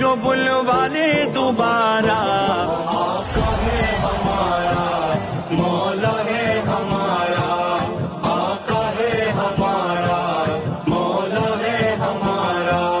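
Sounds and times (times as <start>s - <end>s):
musical accompaniment with a beat: 5.1s - 13.0s.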